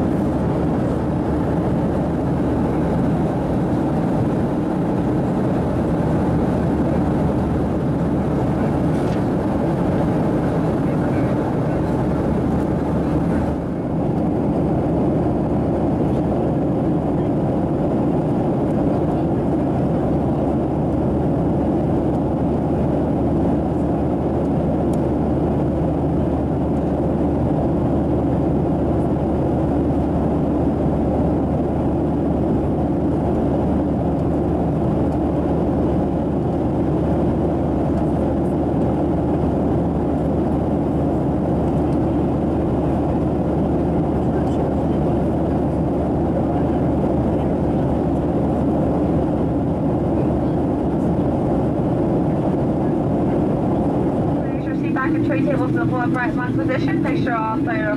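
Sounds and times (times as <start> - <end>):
airliner cabin engine roar: 0.0 - 57.9.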